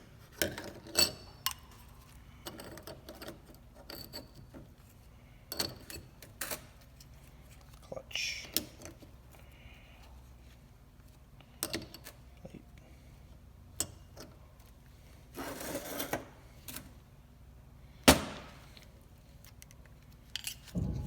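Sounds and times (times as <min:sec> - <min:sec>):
sharp metallic clank: 0:20.8 - 0:21.0.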